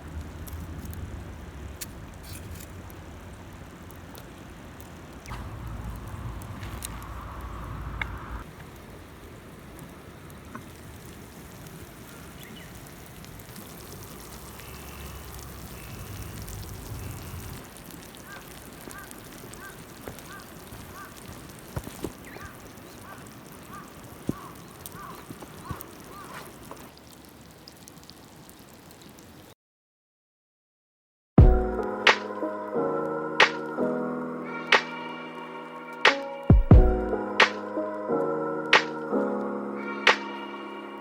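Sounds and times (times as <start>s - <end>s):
outdoor background hiss: 0.0s - 29.6s, 37.1s - 41.0s
bird calling: 5.2s - 8.4s, 14.4s - 17.6s, 18.2s - 21.4s, 22.1s - 26.6s.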